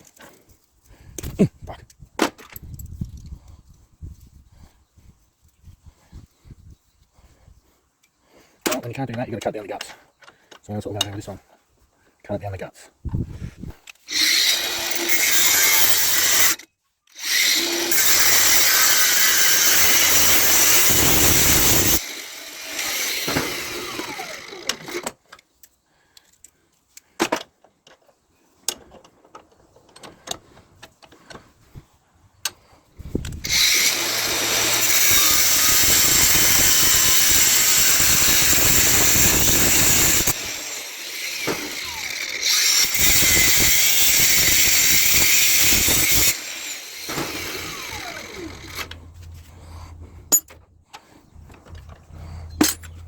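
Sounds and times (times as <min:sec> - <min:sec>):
power tool cutting brass: 0:14.1 - 0:16.6, 0:17.2 - 0:25.1, 0:33.4 - 0:50.5.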